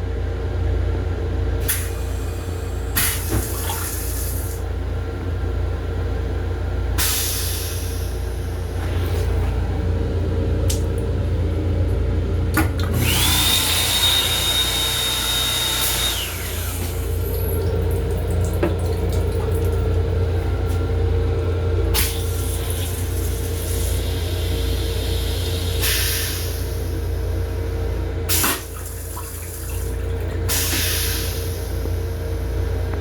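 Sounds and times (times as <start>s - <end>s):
train car rumble: 0.0s - 12.8s, 16.9s - 28.3s.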